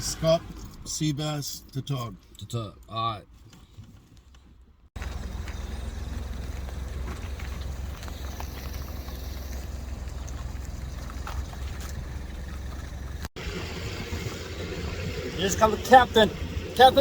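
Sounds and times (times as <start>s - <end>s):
engine low rumble: 3.4s - 17.0s.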